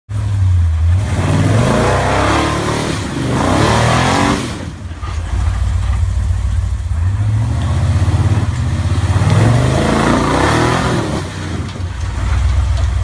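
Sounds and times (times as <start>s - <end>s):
engine revving hard: 0.9s - 5.5s, 7.1s - 11.9s.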